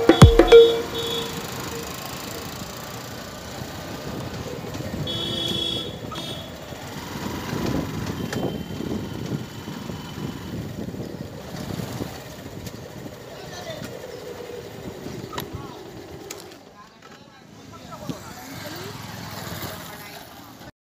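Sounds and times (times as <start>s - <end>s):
brief high beep: 0.0s - 2.0s
motorcycle and traffic noise: 0.0s - 20.7s.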